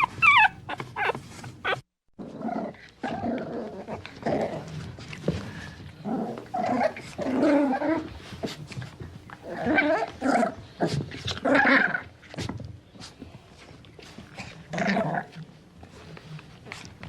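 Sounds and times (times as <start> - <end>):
puppy calling: 0.0 - 1.8.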